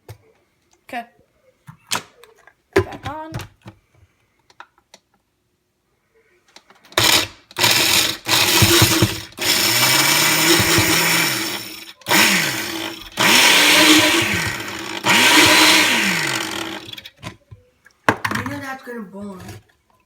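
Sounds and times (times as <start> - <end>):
kitchen blender running in bursts: 7.0 - 17.1.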